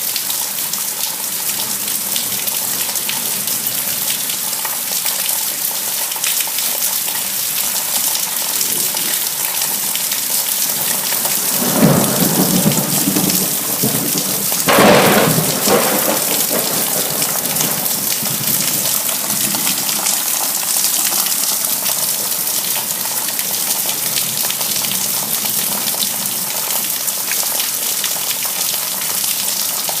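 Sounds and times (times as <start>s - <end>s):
heavy rain hissing: 7.2s - 22.6s
thunder rolling: 10.8s - 20.5s.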